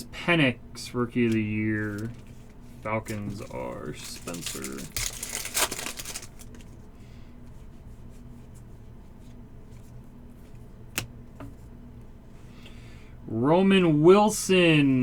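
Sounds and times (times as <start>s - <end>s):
steady low hum: 0.0s - 15.0s
trading cards rustling: 1.2s - 6.8s.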